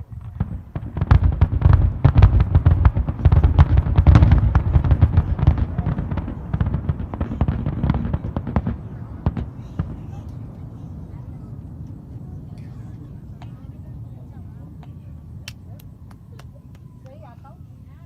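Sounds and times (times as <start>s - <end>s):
fireworks booms and cracks: 0.0s - 17.3s.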